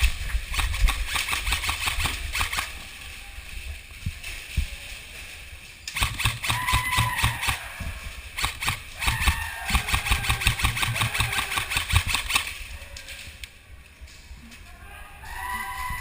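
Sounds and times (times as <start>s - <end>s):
airsoft guns firing bursts: 0.5s - 2.8s, 5.9s - 7.7s, 8.3s - 12.6s.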